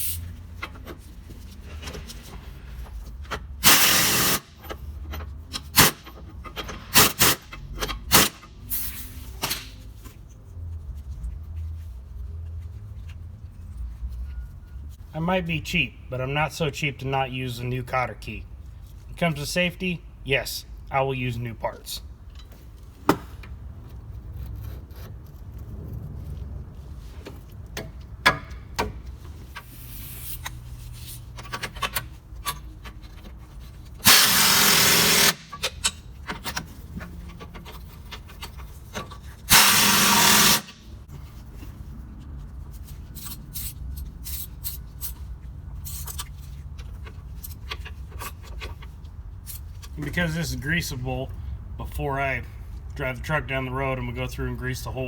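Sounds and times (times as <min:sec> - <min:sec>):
power tool bursts: 0:34.0 - 0:35.6, 0:39.5 - 0:40.8.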